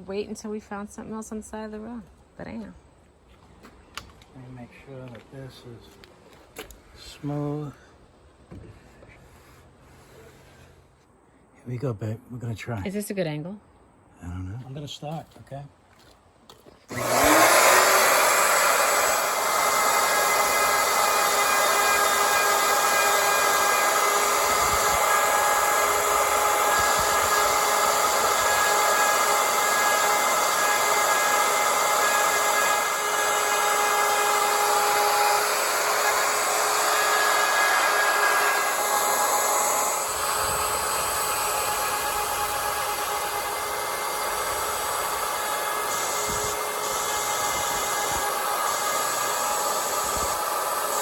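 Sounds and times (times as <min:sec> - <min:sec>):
router motor whining: 0:16.9 - 0:51.0.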